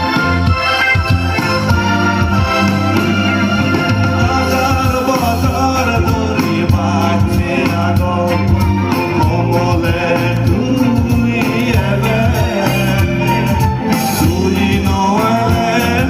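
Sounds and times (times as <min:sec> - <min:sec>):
song with singing and bass: 0:00.0 - 0:16.0.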